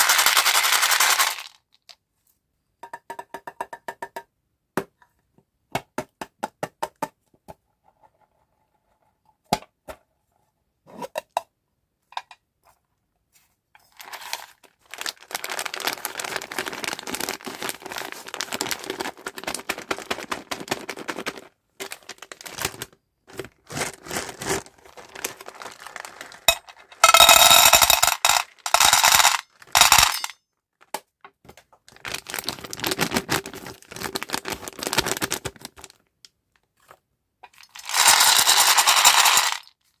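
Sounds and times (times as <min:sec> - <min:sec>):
plastic wrapper crinkling: 0:13.9 - 0:27.5, 0:31.8 - 0:36.1
packet ripping open: 0:14.0 - 0:27.0, 0:31.9 - 0:36.0
packaging clicks and taps: 0:14.9 - 0:30.3.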